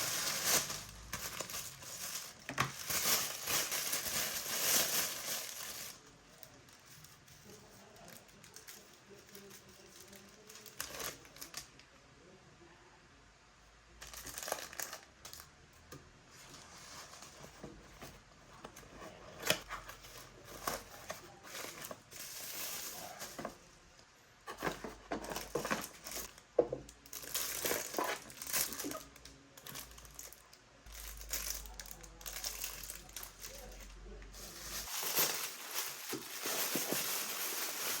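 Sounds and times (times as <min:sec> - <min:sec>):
packaging crinkling and tearing: 0:00.0 - 0:11.7, 0:14.0 - 0:15.5, 0:27.0 - 0:38.0.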